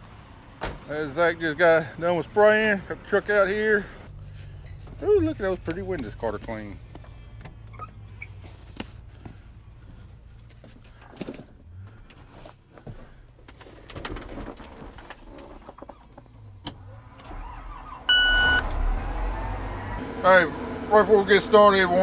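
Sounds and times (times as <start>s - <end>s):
short loud beep: 18.1s - 18.6s.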